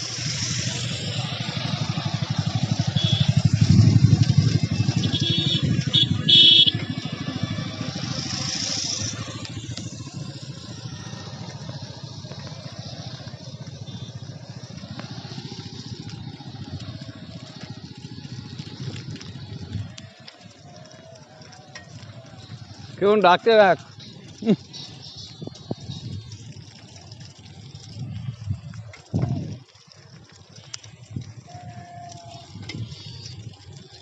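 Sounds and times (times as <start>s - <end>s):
small engine passing: 0.0s - 34.0s.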